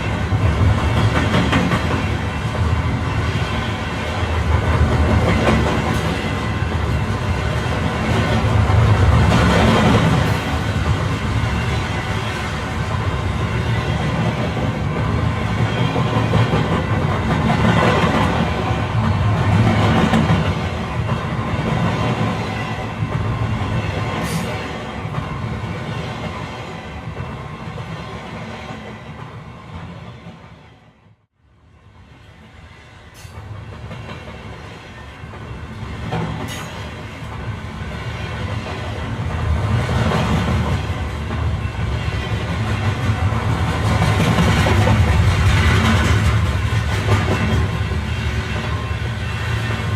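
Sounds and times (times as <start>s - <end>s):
train running on rails: 0.0s - 49.9s.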